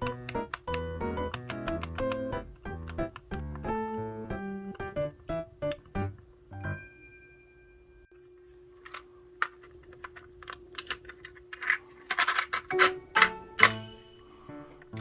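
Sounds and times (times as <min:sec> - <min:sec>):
plastic cassette player clicks: 0:00.0 - 0:03.6
faint steady tone: 0:06.5 - 0:09.2.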